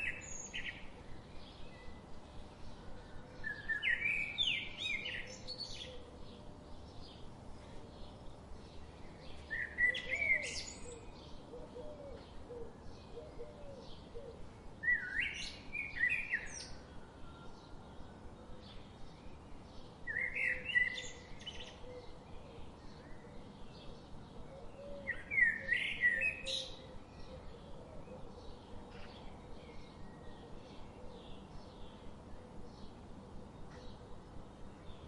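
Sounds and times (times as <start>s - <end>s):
songbird singing warbled phrases: 3.4s - 7.3s, 8.0s - 11.5s, 14.8s - 16.8s, 18.7s - 33.8s.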